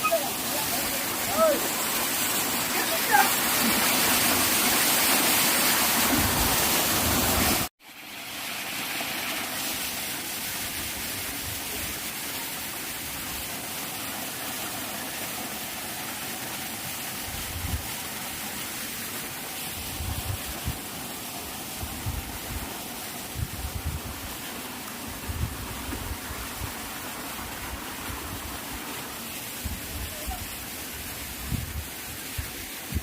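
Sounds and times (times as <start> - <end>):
waterfall rushing: 0.0 - 23.4.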